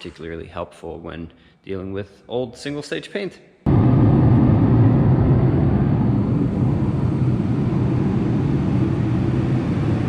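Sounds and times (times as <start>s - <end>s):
loud machine humming: 3.7s - 10.0s.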